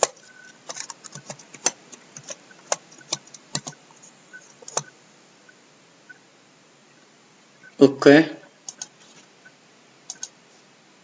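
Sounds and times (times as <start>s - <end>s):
keyboard keystrokes: 0.0s - 3.8s, 4.6s - 4.9s.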